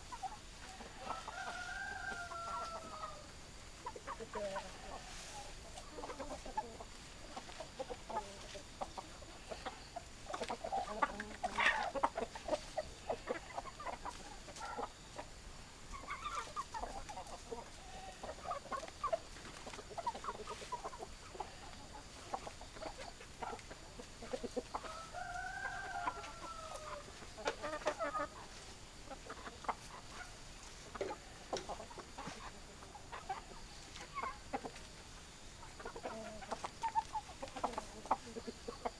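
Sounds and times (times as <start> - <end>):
chickens clucking: 0.0 - 38.9
hen drawn-out call: 0.7 - 3.2.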